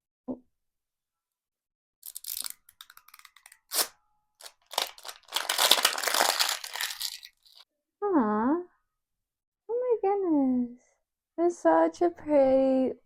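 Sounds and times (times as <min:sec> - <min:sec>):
packaging tearing and crinkling: 0:02.0 - 0:07.6.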